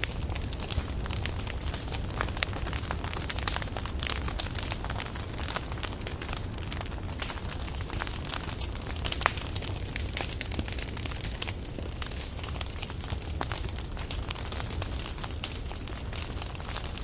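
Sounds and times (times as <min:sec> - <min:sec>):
fire crackling and rumbling: 0:00.0 - 0:17.0.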